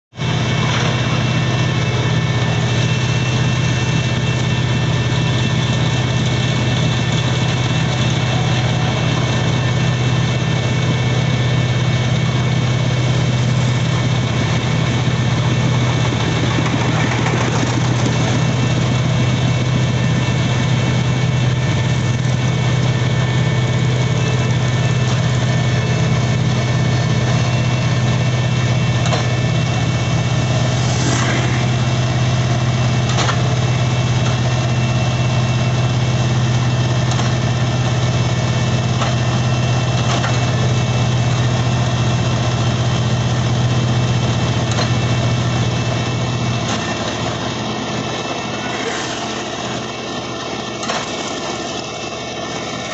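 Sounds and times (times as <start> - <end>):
heavy diesel engine running: 0.0 - 52.9.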